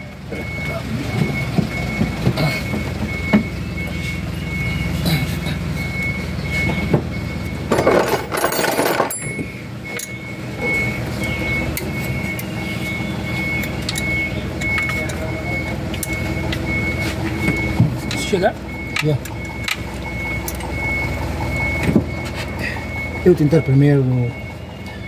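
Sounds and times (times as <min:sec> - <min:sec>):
engine running: 0:00.0 - 0:25.0
high repeating beep: 0:05.8 - 0:25.0.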